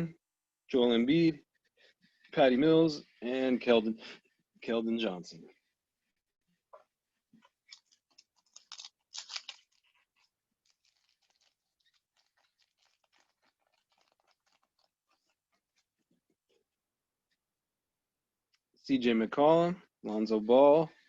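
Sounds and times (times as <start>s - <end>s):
wrapper crinkling: 7.6s - 15.9s.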